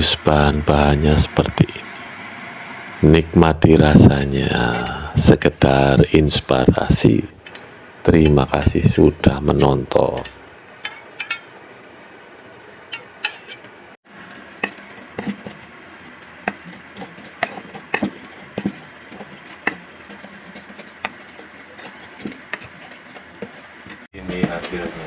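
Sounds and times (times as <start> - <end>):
steady background hiss: 0.0 - 10.7
utensils clinking against dishes: 9.6 - 11.5.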